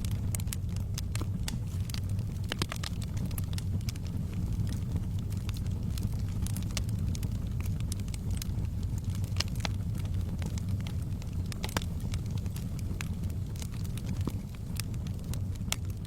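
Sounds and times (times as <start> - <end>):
fire crackling and popping: 0.0 - 16.0
low rumble of flames: 0.0 - 16.0.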